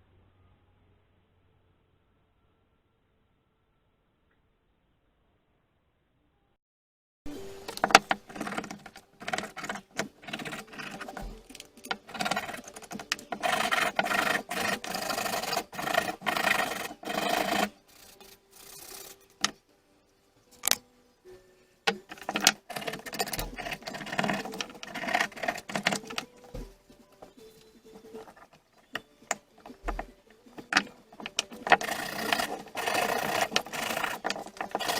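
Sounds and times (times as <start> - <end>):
metal clicks and knocks: 7.7 - 17.7, 20.6 - 20.8, 21.9 - 34.9
scraping rusty steel: 7.7 - 19.6, 21.9 - 34.9.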